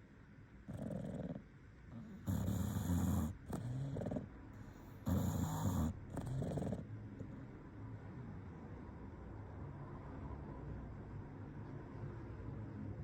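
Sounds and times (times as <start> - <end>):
dog snoring: 0.6 - 7.5.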